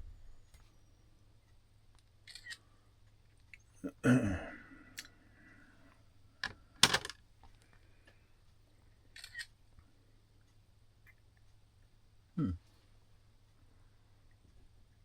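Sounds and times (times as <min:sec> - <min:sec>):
metal parts clicking and clinking: 0:06.8 - 0:07.2.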